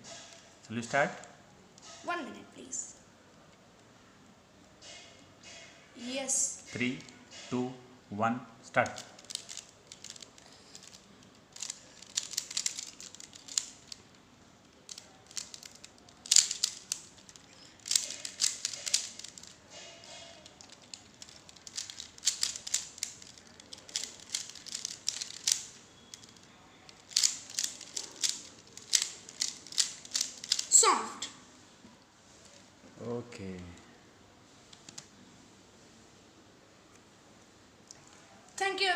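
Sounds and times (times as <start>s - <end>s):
plastic puzzle clicks and snaps: 8.8s - 14.0s, 14.7s - 30.7s.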